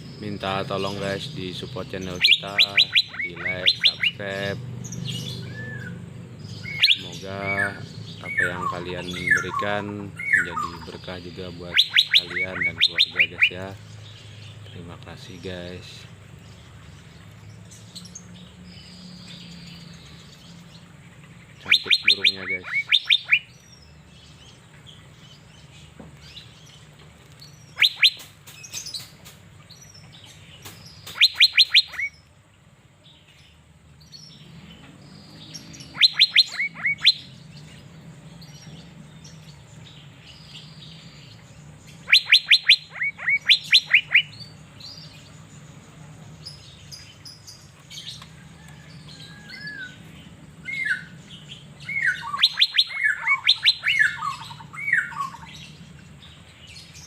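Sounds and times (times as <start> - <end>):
bird calling sharp notes: 0.0 - 14.6, 21.5 - 23.7, 27.5 - 32.3, 35.1 - 37.7, 39.8 - 45.2, 46.6 - 55.8.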